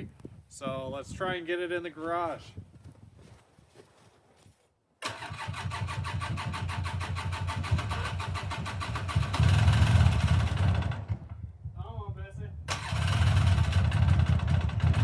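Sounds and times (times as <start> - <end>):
atv engine starting: 5.0 - 11.4, 12.7 - 15.0.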